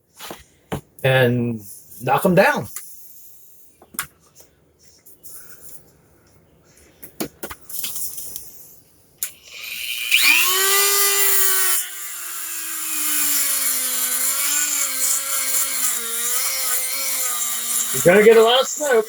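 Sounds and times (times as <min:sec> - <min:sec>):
rotary tool cutting plastic: 0:09.2 - 0:19.0
rotary tool whining: 0:09.4 - 0:19.0.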